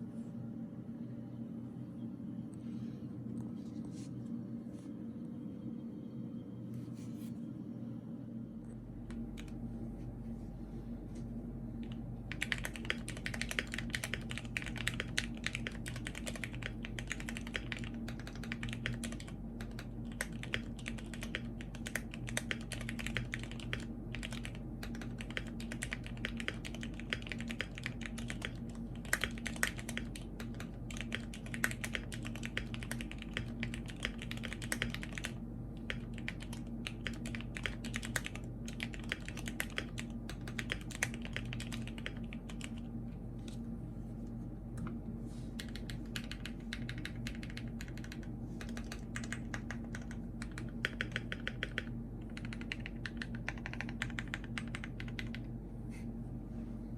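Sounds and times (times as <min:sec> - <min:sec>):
steady low hum: 0:00.0 - 0:56.9
mechanical keyboard typing: 0:11.8 - 0:42.9, 0:45.6 - 0:55.5.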